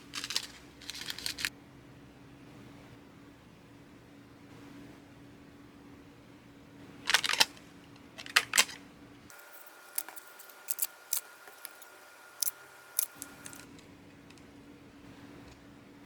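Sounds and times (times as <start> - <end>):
crinkling clicks: 0.1 - 1.5, 7.1 - 14.5
crisp snips: 9.3 - 13.6.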